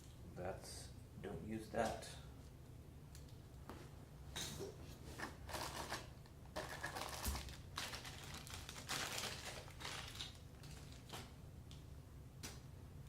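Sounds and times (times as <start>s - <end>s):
plastic packaging crinkling: 5.4s - 11.4s.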